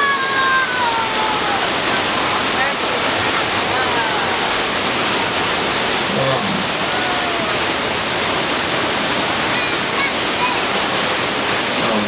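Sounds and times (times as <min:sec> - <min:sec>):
water pouring out: 0:01.2 - 0:12.0.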